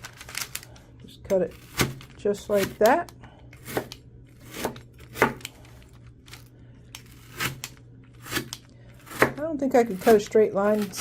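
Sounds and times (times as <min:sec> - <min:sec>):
pizza cutter crunching through bar: 0:07.1 - 0:11.0.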